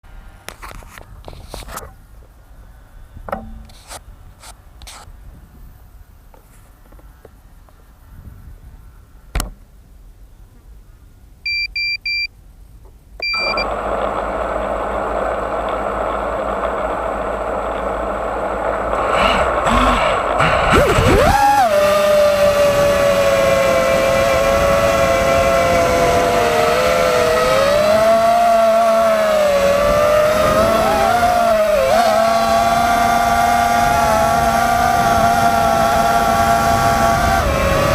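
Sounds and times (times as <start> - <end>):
quick beeps: 11.5 - 12.3, 13.2 - 13.7
drone motors spinning: 13.3 - 37.9.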